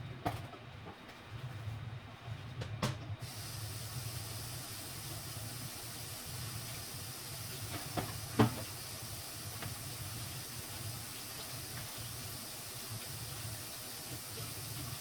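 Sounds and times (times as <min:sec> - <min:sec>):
food frying in a pan: 0:03.2 - 0:15.0.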